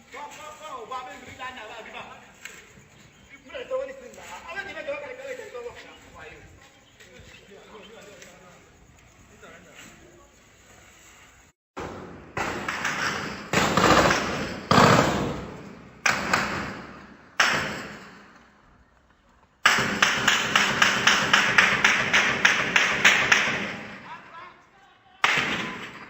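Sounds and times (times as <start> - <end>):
rapid gunfire: 12.4 - 18.1, 19.6 - 24.0, 25.2 - 26.0
single gunshots ringing: 25.2 - 26.0.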